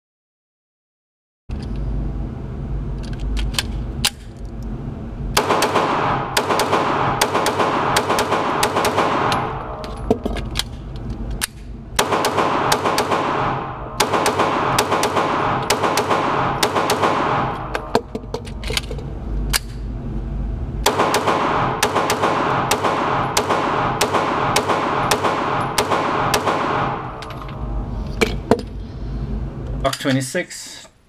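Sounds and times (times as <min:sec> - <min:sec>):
pistol gunshots: 0:05.4 - 0:09.8, 0:12.0 - 0:18.0, 0:20.8 - 0:27.2.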